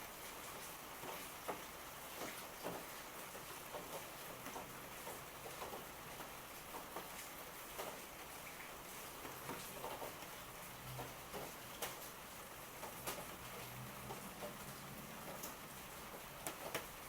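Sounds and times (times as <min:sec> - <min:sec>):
steady rain falling: 0:00.0 - 0:17.0.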